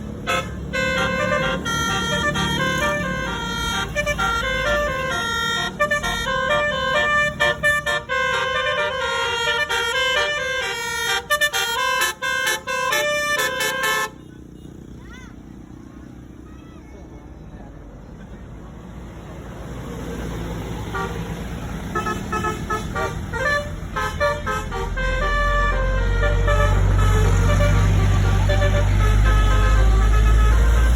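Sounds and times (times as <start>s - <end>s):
multi-tone bus horn melody: 0.0s - 14.8s, 20.8s - 30.9s.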